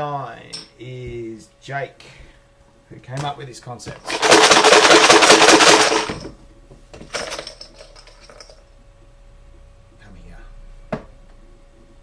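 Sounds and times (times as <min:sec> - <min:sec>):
hard pieces rattling in container: 0:04.0 - 0:06.2.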